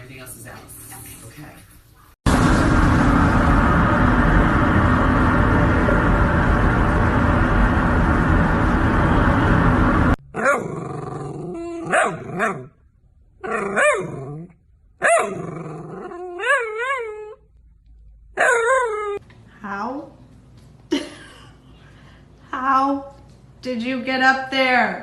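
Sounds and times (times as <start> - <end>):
loud rushing noise: 2.3 - 10.2
dog howling and whining: 13.4 - 17.4, 18.4 - 19.2.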